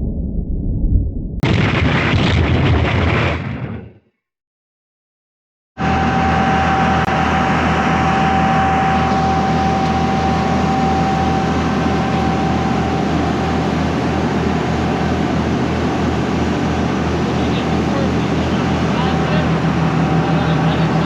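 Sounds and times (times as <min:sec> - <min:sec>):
boat engine droning: 0:05.8 - 0:21.0
high whine: 0:05.8 - 0:21.0.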